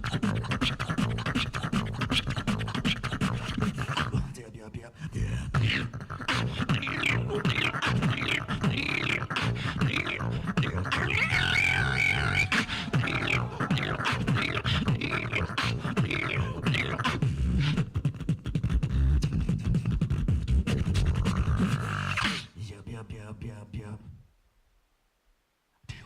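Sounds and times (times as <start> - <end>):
beatbox bass kicks and clicks: 0.0 - 4.3, 5.6 - 11.1, 12.5 - 22.5
held pitched vocal tone: 0.0 - 24.2.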